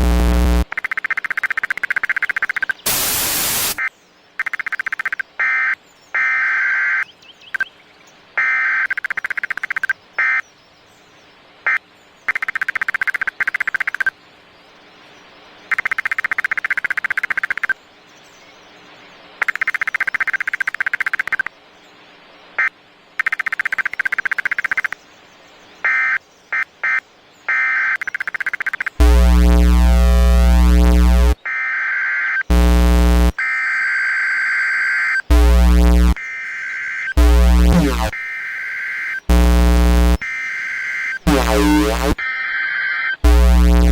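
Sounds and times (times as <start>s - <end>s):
buzzy digital tone bursts: 0.0s - 0.7s, 2.9s - 3.8s, 29.0s - 31.4s, 32.3s - 33.4s, 35.2s - 36.2s, 37.0s - 43.9s
harsh alert tone with deep bass: 0.0s - 0.7s, 29.0s - 31.4s, 32.5s - 33.4s, 35.3s - 36.2s, 37.2s - 38.2s, 39.3s - 40.2s, 41.2s - 42.2s, 43.2s - 43.9s.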